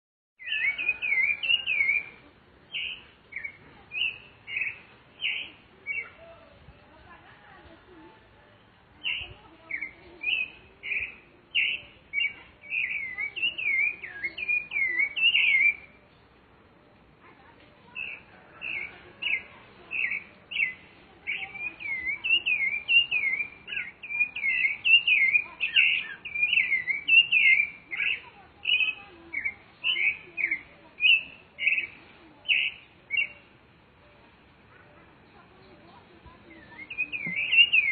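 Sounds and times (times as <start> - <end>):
thrush singing whistled phrases: 0.4 - 6.2, 9.0 - 16.0, 18.0 - 33.5, 36.4 - 37.9.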